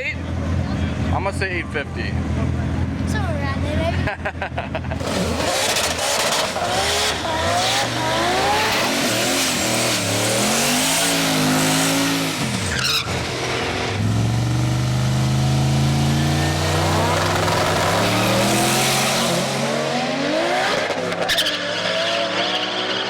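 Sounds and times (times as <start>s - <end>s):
engine revving: 2.1s - 23.0s
tyres squealing: 5.0s - 13.9s.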